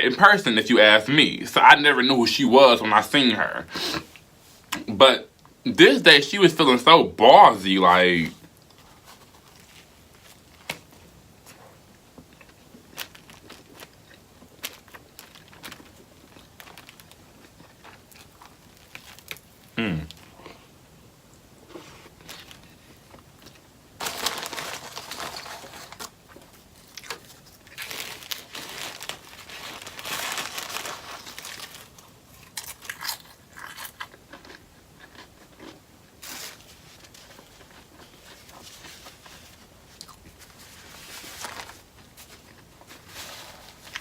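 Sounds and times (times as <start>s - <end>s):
person eating crunchy food: 11.4s - 20.7s, 21.6s - 44.0s.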